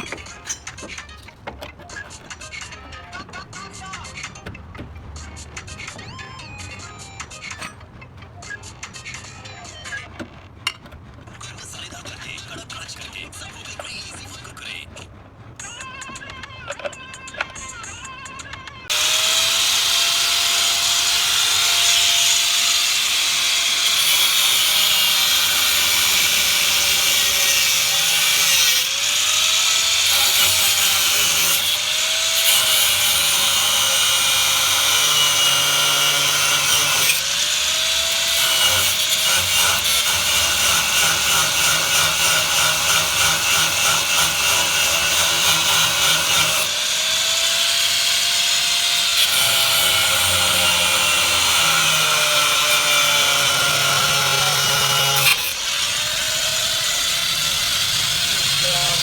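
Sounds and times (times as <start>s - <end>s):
power tool motor running: 18.9s - 59.0s.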